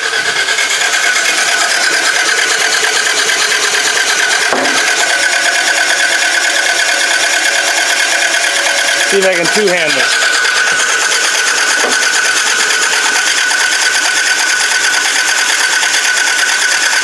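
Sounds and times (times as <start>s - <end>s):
starter motor cranking engine: 0.0s - 17.0s.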